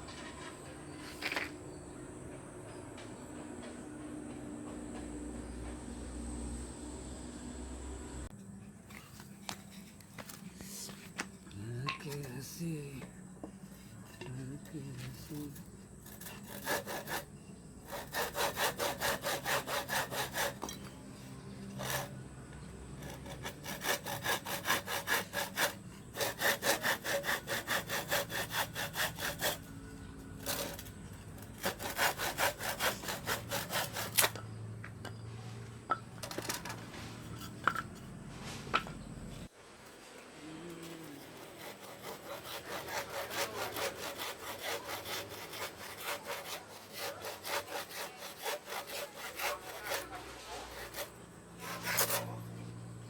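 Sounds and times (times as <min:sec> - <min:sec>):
hand saw sawing: 0:13.7 - 0:34.5, 0:40.4 - 0:53.0.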